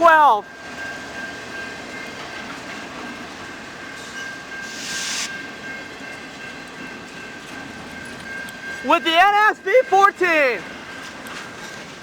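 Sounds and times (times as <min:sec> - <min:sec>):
freight train wheels rumbling on rails: 0:00.0 - 0:12.0
high thin whine: 0:04.6 - 0:05.4
short hiss: 0:04.6 - 0:05.4.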